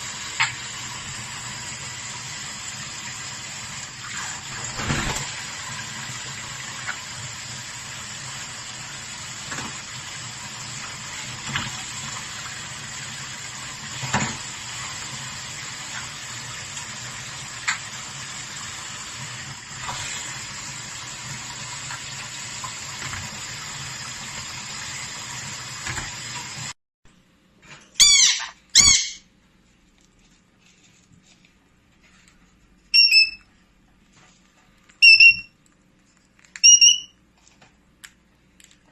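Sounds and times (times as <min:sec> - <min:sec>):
rushing noise like running water: 0:00.0 - 0:26.8
harsh parrot squawks: 0:28.0 - 0:29.3, 0:35.0 - 0:35.5.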